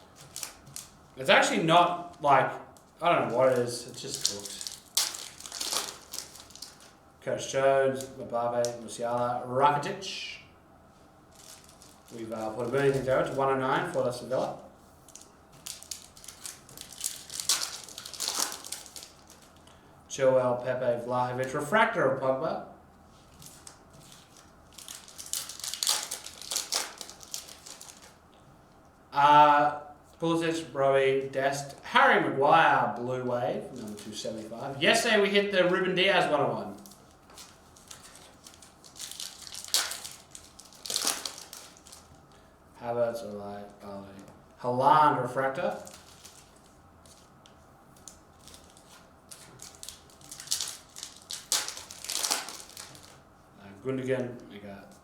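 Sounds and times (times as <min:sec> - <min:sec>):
foil wrapper crinkling: 0:00.0 - 0:07.0, 0:11.3 - 0:19.8, 0:23.1 - 0:28.2, 0:33.7 - 0:35.2, 0:36.2 - 0:42.4, 0:45.5 - 0:53.2.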